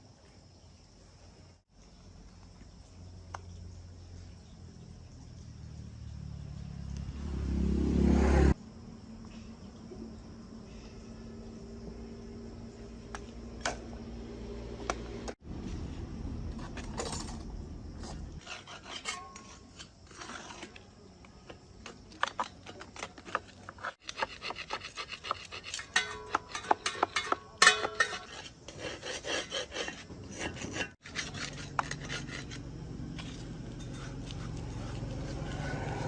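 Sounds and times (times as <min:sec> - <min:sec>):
scraping and filing metal: 0:18.0 - 0:20.8, 0:23.0 - 0:36.0.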